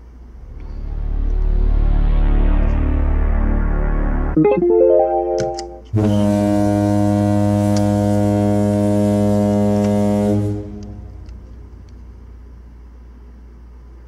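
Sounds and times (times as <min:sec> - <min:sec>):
low foghorn blast: 0:05.9 - 0:11.4.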